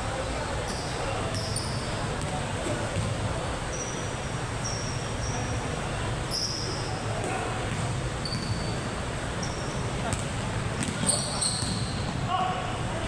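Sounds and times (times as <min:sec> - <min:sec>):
crowd murmur: 0:00.0 - 0:08.2
basketball shoes squeaking: 0:00.6 - 0:05.6, 0:06.3 - 0:12.2.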